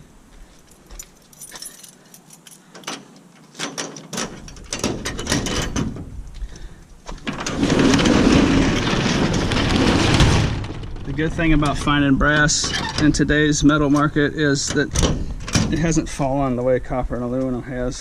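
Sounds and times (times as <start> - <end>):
scrap metal clinking: 0.6 - 5.8.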